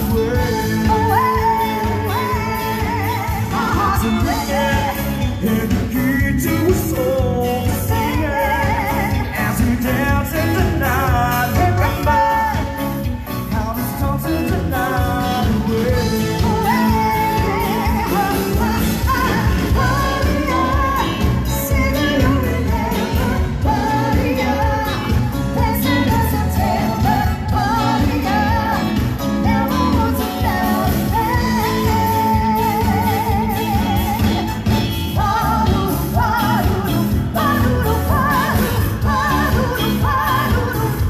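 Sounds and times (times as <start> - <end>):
pop song with singing: 0.0 - 41.0.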